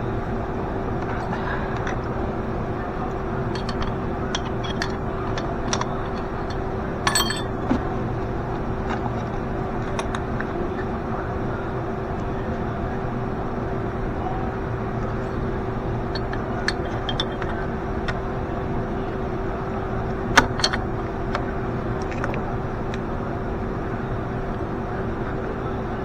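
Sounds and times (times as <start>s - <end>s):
mechanical hum: 0.0s - 26.0s
hand tools clinking: 3.4s - 7.9s, 16.1s - 17.6s, 20.4s - 20.9s.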